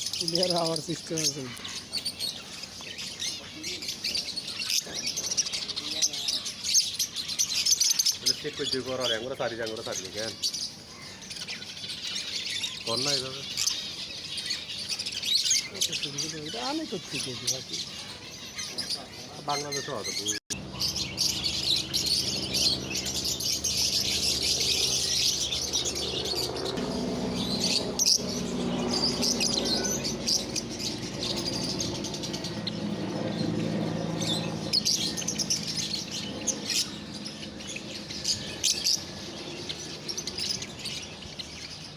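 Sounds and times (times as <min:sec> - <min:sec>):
small birds twittering: 0:00.0 - 0:41.9
low hum: 0:20.5 - 0:40.1.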